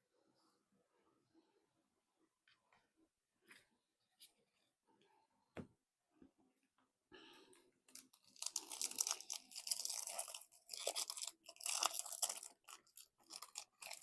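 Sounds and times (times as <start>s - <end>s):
foil wrapper crinkling and tearing: 7.9s - 14.0s.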